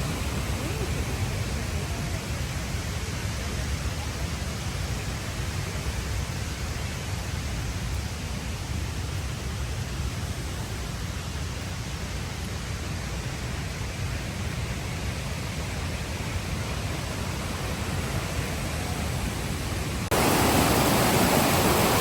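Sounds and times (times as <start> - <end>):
wind buffeting microphone: 0.0 - 3.0.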